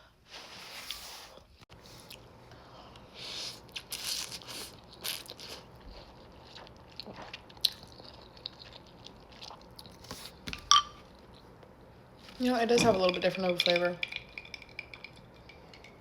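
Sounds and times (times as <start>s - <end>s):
person biting and chewing food: 3.3s - 10.5s.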